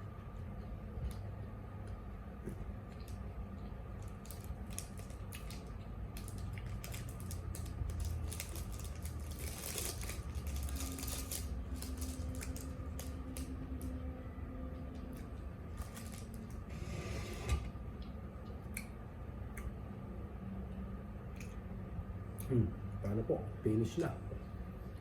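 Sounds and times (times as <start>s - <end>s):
steady low hum: 0.0s - 25.0s
small eating clicks: 0.2s - 13.9s.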